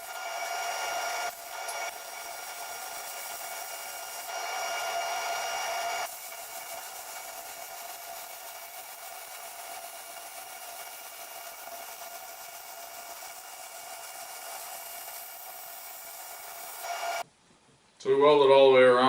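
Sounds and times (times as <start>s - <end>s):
arc welder sizzling hiss: 0.0s - 17.2s.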